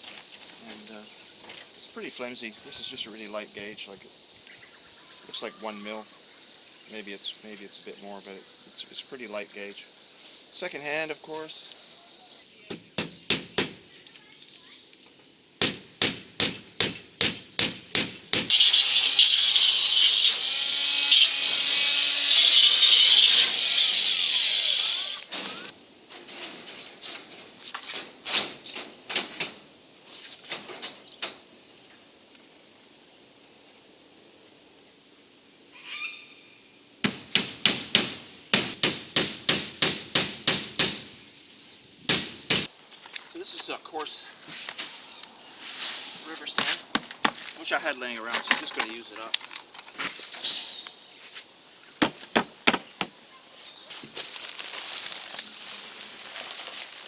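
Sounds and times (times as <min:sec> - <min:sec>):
sharp knocks: 0:12.7 - 0:13.8, 0:15.6 - 0:19.2, 0:37.0 - 0:41.1, 0:42.1 - 0:42.7
hammer strikes: 0:15.6 - 0:19.2, 0:37.0 - 0:41.1, 0:42.1 - 0:42.7.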